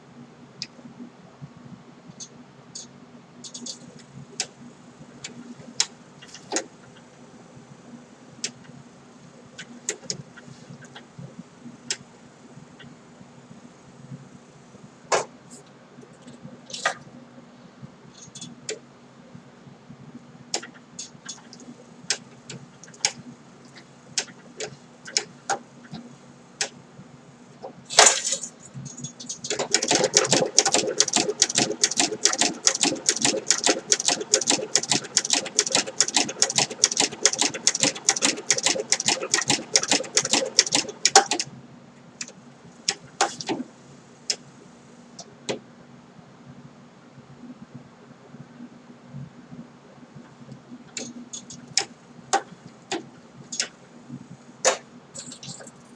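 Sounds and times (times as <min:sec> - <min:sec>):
sewing machine stitching: 0:29.5 - 0:41.4.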